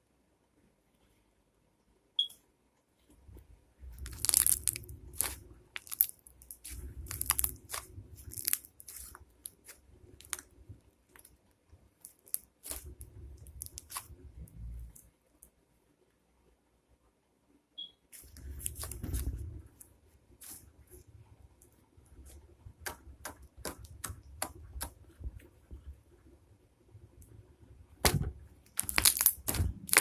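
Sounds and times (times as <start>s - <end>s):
slime crackling and squelching: 3.8s - 15.1s, 18.2s - 21.0s, 22.1s - 25.9s, 28.0s - 30.0s.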